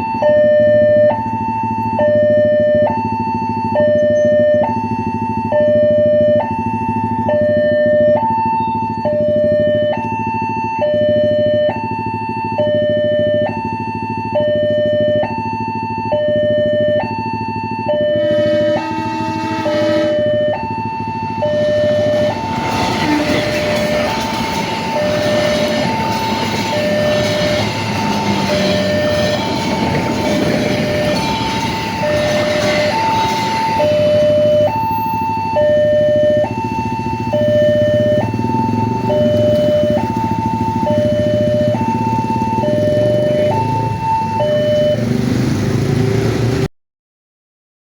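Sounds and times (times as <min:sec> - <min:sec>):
two-tone warning siren: 0:00.0 - 0:45.2
train rolling over crossing: 0:18.0 - 0:46.7.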